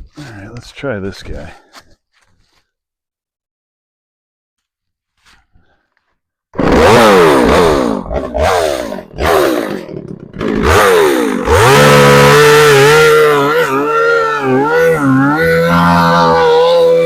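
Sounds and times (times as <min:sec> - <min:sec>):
chainsaw cutting log: 0:06.6 - 0:17.0.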